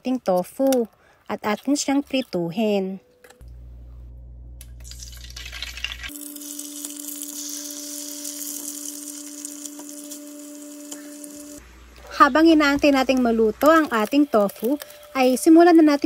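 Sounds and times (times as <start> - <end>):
low hum: 3.3 - 15.2
tofu sizzling in hot oil: 4.8 - 11.6.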